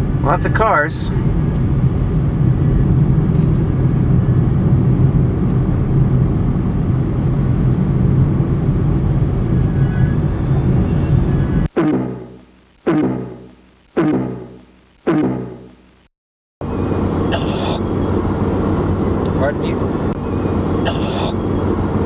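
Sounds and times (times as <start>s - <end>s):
car engine drone and tyre noise: 0.0s - 12.0s, 16.6s - 22.0s.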